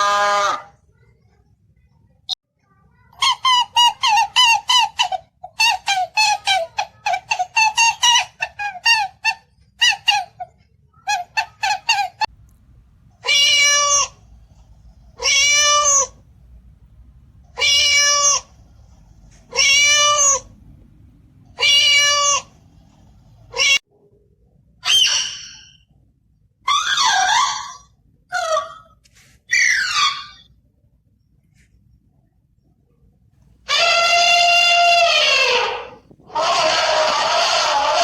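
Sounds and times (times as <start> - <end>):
cat meowing: 13.2 - 14.2, 17.5 - 18.6, 21.6 - 22.5, 33.7 - 38.0.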